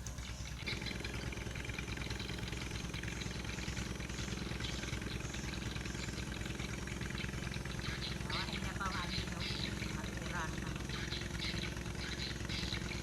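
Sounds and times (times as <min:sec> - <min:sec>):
small engine idling: 0:00.0 - 0:13.0.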